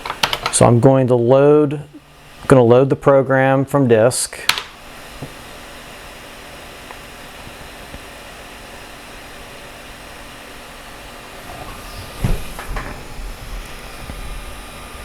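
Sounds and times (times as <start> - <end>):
steady hiss: 0.0 - 15.0
floppy disk drive motor rumble: 4.7 - 15.0.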